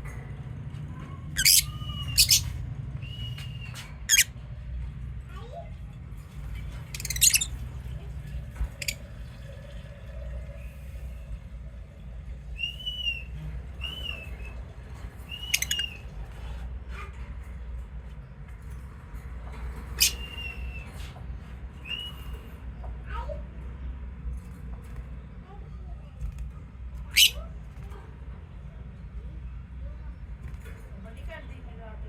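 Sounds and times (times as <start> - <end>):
low background hum: 0.0 - 32.0
lovebirds chirping: 1.4 - 2.5, 3.5 - 4.3, 6.9 - 7.6, 15.3 - 16.0, 20.0 - 20.6.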